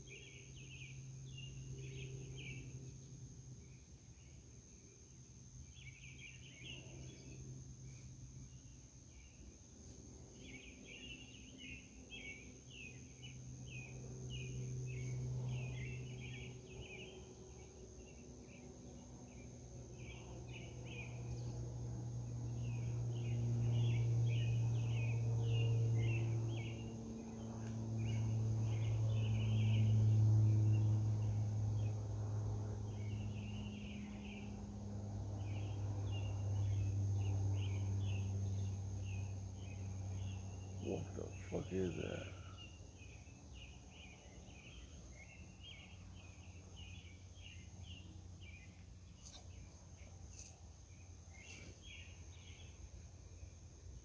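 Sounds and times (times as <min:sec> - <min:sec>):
low droning hum: 0:00.0 - 0:54.0
night insects chirping: 0:00.0 - 0:54.0
steady high-pitched whine: 0:00.0 - 0:54.0.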